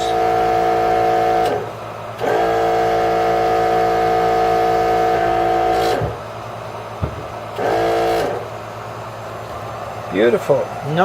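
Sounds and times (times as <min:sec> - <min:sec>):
electric oil pump whining: 0:00.0 - 0:11.0.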